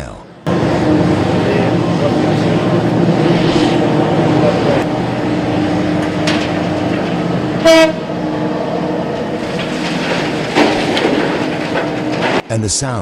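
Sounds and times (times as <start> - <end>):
loud horn blast: 0.5 - 8.3
excavator diesel engine rumble: 0.5 - 12.6.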